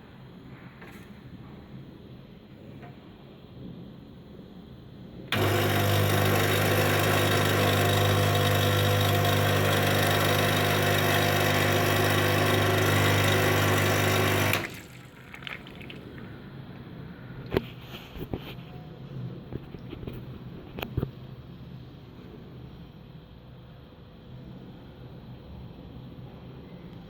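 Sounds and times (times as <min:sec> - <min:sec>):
coffee grinder motor running: 0:05.3 - 0:14.9.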